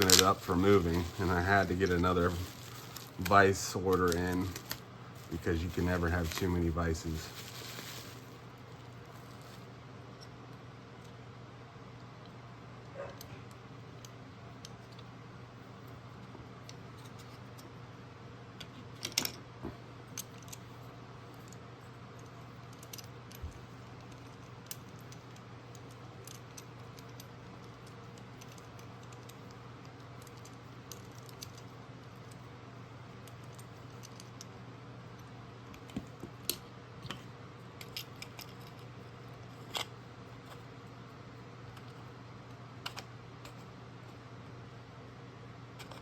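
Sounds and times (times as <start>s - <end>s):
small hard parts clicking: 0.0s - 6.5s, 21.3s - 32.4s
steady low hum: 0.0s - 46.0s.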